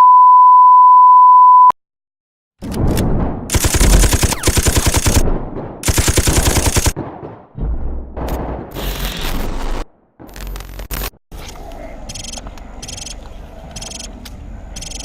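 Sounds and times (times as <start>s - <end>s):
automatic gunfire: 3.5s - 7.2s
steady beep tone: 12.1s - 13.2s, 13.8s - 14.1s.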